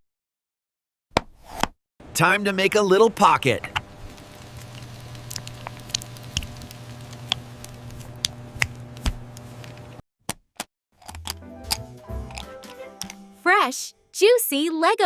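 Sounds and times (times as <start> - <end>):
faint steady hum: 3.6 - 10.0.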